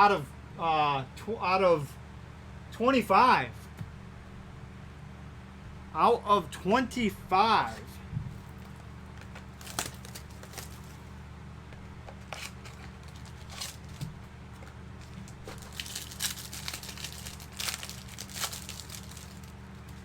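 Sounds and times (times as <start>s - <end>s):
steady low hum: 0.0s - 20.0s
card packaging crinkling and tearing: 8.4s - 11.1s, 11.8s - 20.0s.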